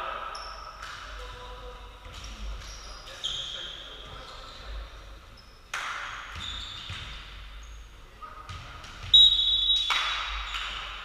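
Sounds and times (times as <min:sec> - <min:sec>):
shoe squeaks: 0:02.0 - 0:08.0, 0:09.1 - 0:10.9
shrill whistle: 0:09.1 - 0:09.9.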